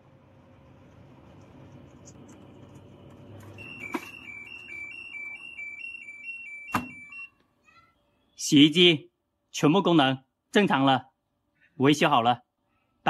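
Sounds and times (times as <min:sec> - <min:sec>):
washing machine drum hum: 0:00.0 - 0:07.2
two-tone alarm beeping: 0:03.5 - 0:07.4.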